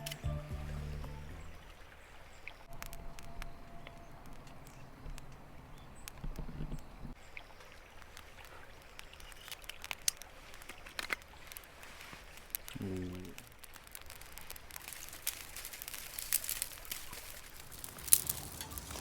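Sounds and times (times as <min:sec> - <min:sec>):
firewood being handled: 0:08.0 - 0:19.0.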